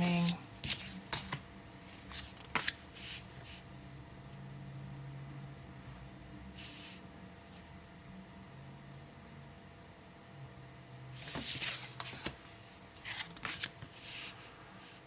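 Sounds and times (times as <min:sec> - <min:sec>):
cards sliding: 0:02.1 - 0:03.3, 0:13.0 - 0:14.4.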